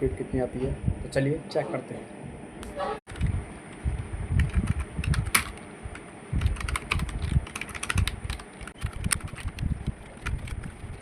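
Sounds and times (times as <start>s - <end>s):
typing on computer keyboard: 6.4s - 10.8s.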